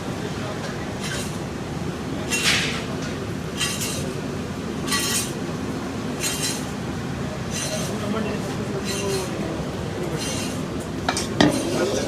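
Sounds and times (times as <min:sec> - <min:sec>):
metal spatulas clanging on griddle: 0:11.1 - 0:11.9.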